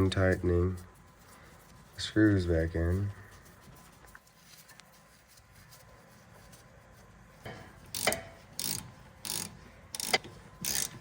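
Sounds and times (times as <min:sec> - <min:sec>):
hand ratchet clicking: 0:07.8 - 0:11.0.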